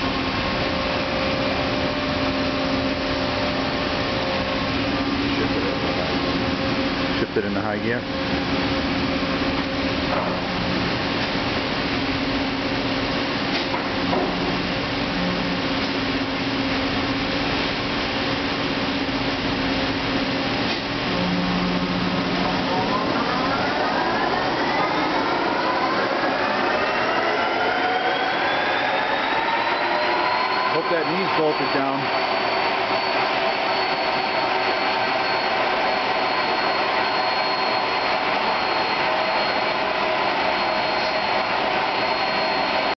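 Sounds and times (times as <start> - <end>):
lathe drive whirring: 0.0 - 43.0.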